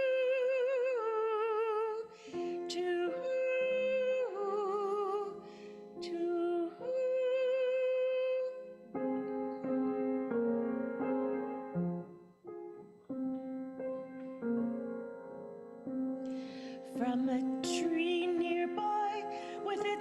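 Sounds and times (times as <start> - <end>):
woman singing with vibrato: 0.0 - 9.0, 16.8 - 20.0
piano accompaniment: 0.0 - 20.0.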